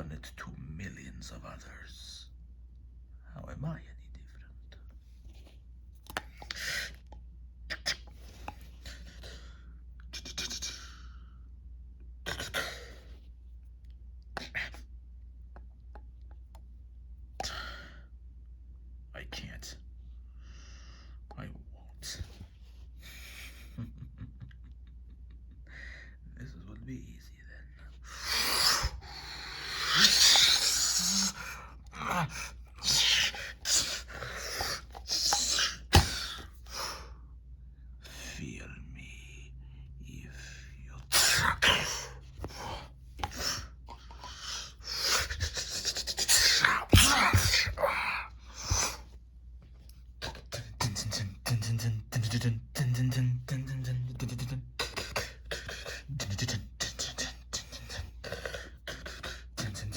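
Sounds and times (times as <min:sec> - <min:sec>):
person gasping and grunting: 0:28.2 - 0:37.2, 0:41.1 - 0:49.0, 0:54.8 - 0:59.9
low grunting vocal sounds: 0:40.2 - 0:49.0.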